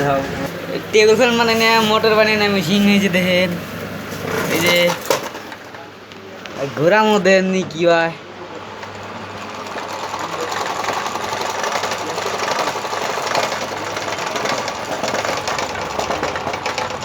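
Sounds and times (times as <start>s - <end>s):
coil winding machine whirring: 8.8s - 17.0s.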